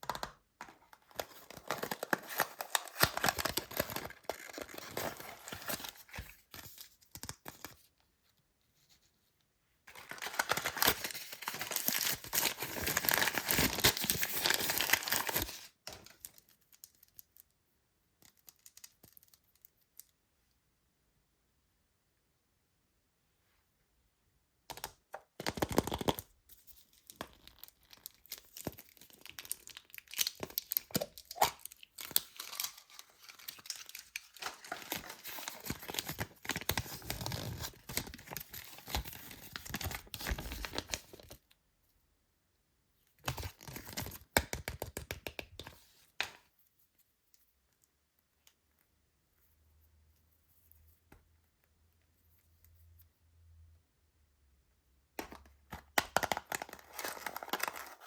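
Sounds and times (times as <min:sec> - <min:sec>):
plastic packaging tearing and crinkling: 0:01.1 - 0:06.2, 0:09.9 - 0:16.3, 0:27.4 - 0:41.3, 0:55.7 - 0:58.0.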